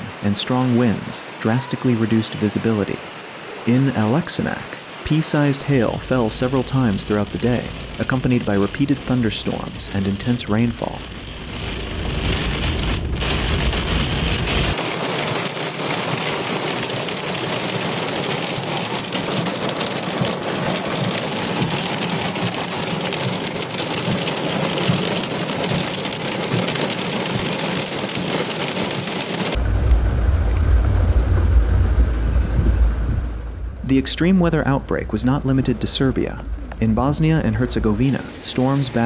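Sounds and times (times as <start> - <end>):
heavy rain pouring: 0.0 - 39.0
low rumble: 10.8 - 14.8, 29.6 - 38.2.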